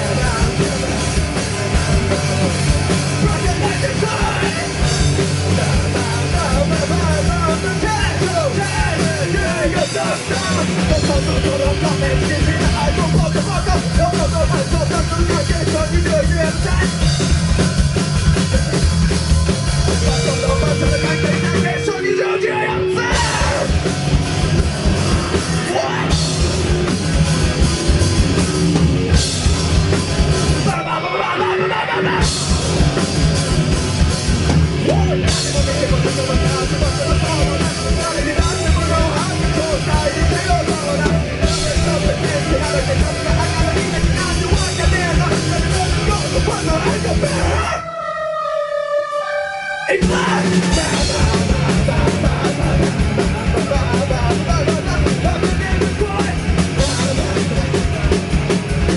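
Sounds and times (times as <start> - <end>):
pounding drums: 0.0 - 30.8, 32.0 - 47.7, 50.0 - 58.9
live rock band playing: 0.0 - 58.9
yelled vocals: 0.0 - 58.9.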